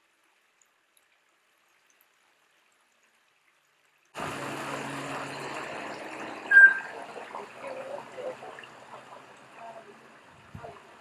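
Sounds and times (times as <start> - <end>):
bird note: 4.2 - 11.0
running water: 4.2 - 11.0.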